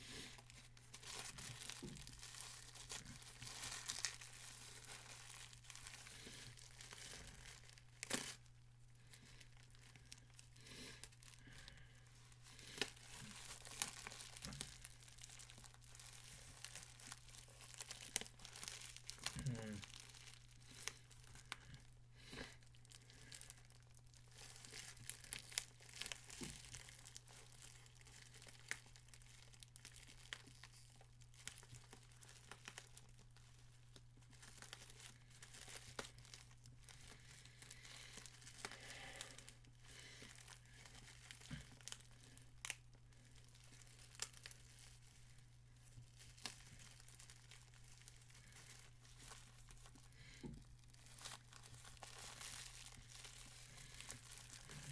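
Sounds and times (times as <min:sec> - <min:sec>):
paper and packaging tearing: 0:00.0 - 0:08.5, 0:46.0 - 0:54.9
small clicks and rustles: 0:22.6 - 0:54.9.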